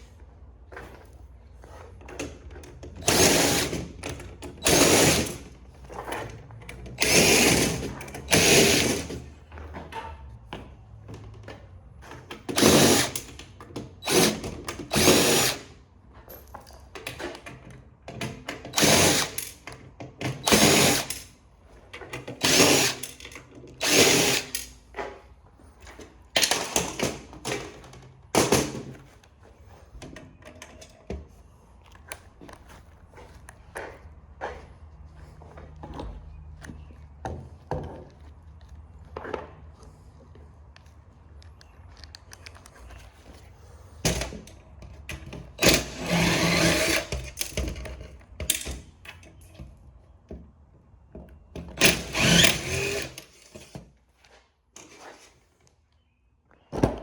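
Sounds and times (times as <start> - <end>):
power drill bursts: 3.0 - 4.0, 4.6 - 5.4, 7.0 - 9.2, 12.5 - 13.3, 14.0 - 15.7, 18.7 - 19.6, 20.4 - 21.2, 22.4 - 23.2, 23.8 - 24.7, 45.6 - 47.6, 51.8 - 53.8.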